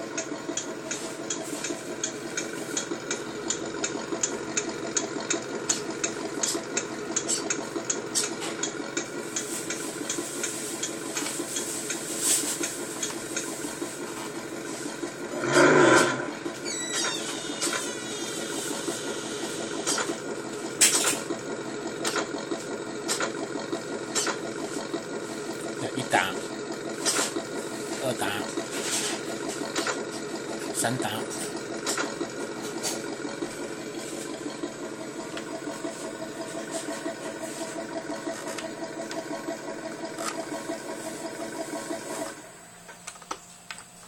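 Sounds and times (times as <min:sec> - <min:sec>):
simulated engine idling: 0:00.0 - 0:43.6
engine revving: 0:15.1 - 0:16.6.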